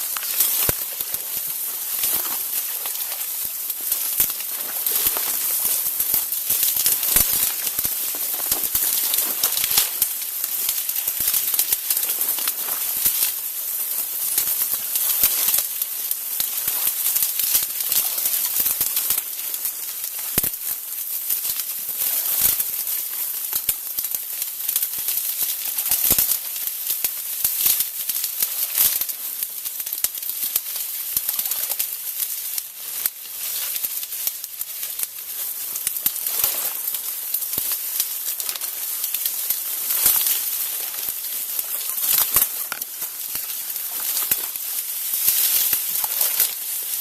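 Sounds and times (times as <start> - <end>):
footsteps crunching through brush: 0.0 - 10.2
steady high hiss: 0.0 - 21.0.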